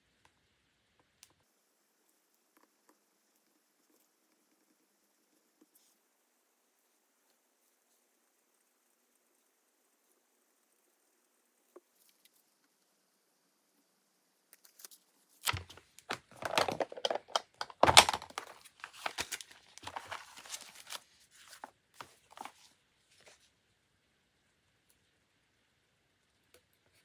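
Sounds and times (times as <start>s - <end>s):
paper tearing and crinkling: 15.4s - 22.7s.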